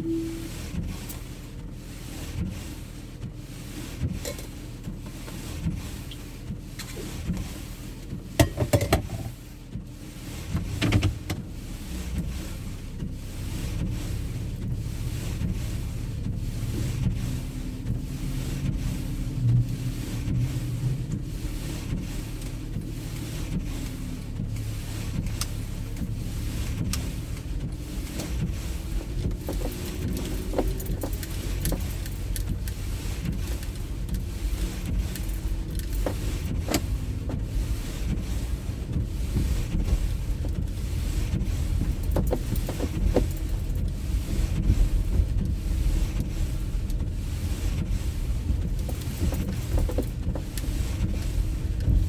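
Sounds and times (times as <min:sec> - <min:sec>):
car engine and tyres rumbling: 0:00.0 - 0:52.0.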